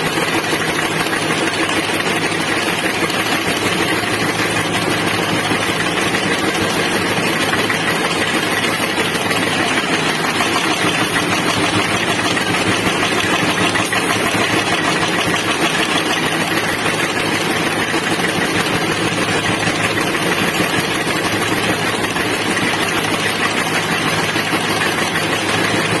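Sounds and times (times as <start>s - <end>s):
machinery running: 0.0s - 26.0s.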